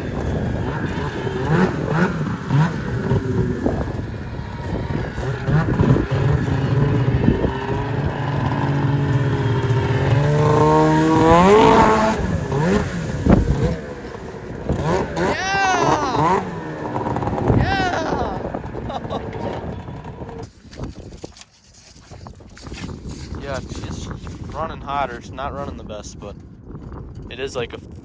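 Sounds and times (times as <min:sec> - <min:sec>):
snowmobile engine revving: 0:00.0 - 0:20.5.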